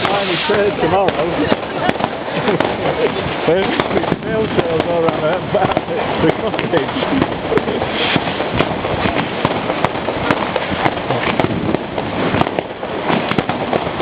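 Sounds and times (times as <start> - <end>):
fireworks bangs and crackles: 0.0 - 14.0
low noisy rumble: 0.0 - 14.0.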